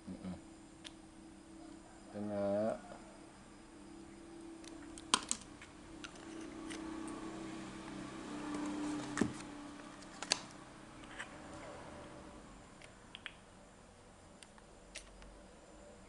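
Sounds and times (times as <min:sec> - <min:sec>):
faint low hum: 0:00.0 - 0:16.0.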